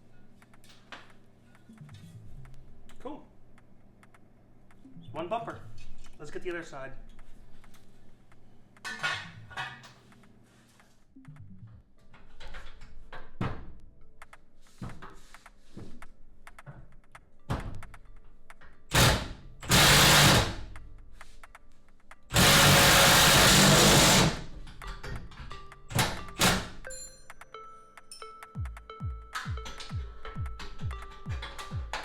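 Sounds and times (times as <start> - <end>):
power tool running: 18.9 - 20.8, 22.3 - 24.5
hand tools clinking and knocking: 23.7 - 27.5, 30.6 - 32.0.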